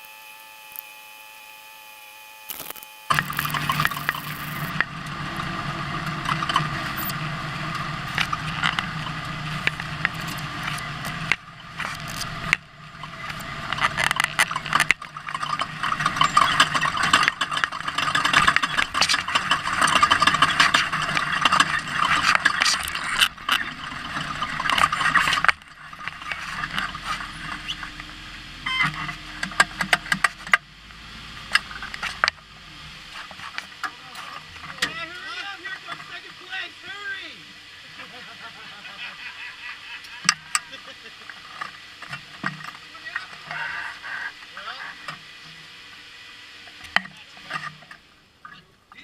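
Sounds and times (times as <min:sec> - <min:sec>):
rattling and scraping: 0:03.1 - 0:28.2
truck engine running: 0:03.1 - 0:45.1.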